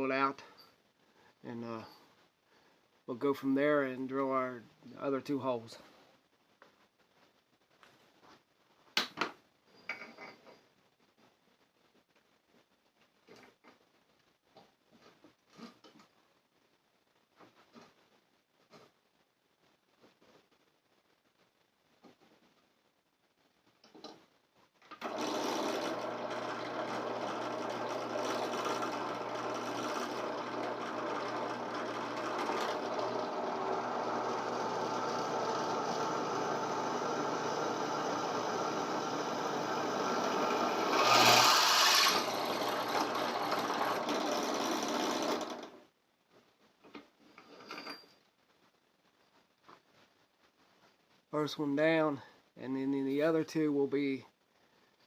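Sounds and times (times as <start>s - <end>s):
drill press motor drilling: 25.0s - 45.8s.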